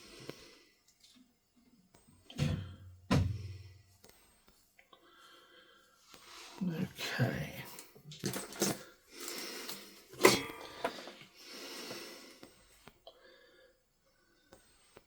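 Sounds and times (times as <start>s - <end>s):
breathy puffs of air: 10.8s - 13.8s.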